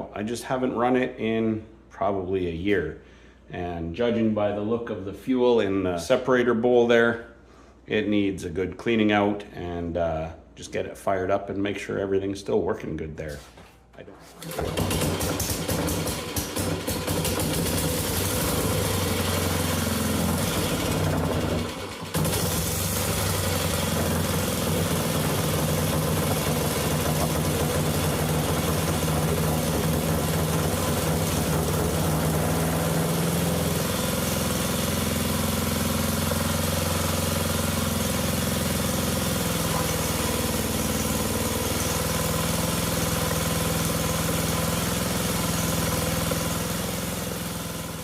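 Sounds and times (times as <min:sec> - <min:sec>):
single-cylinder engine running: 0:14.4 - 0:48.0.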